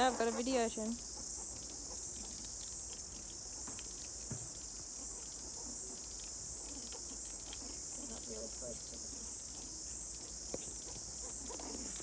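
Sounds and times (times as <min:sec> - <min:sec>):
insects droning shrilly: 0:00.0 - 0:01.0.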